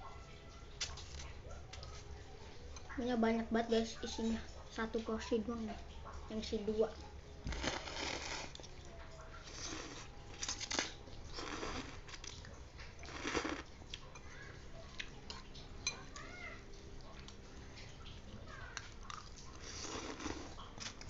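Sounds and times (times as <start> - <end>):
slurping and chewing noodles: 7.5 - 8.8, 9.4 - 14.2, 18.8 - 21.0.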